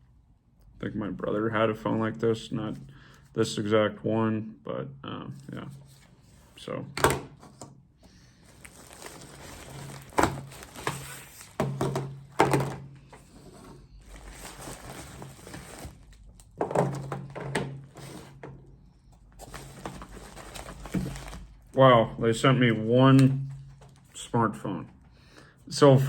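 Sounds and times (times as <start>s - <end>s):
rummaging in a box: 8.4s - 21.8s.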